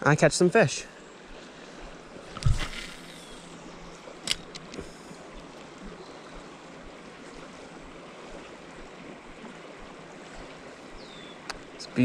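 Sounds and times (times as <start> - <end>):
flowing river water: 0.0 - 12.0.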